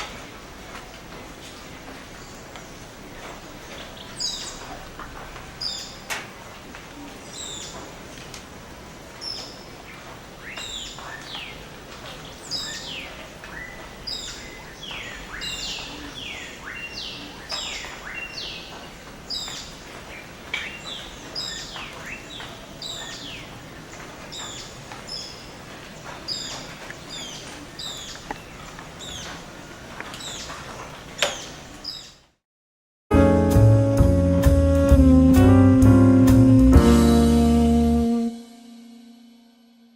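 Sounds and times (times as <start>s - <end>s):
steady background hiss: 0.0s - 32.3s
birds chirping and whistling: 12.4s - 19.7s, 20.6s - 23.5s, 26.3s - 29.5s.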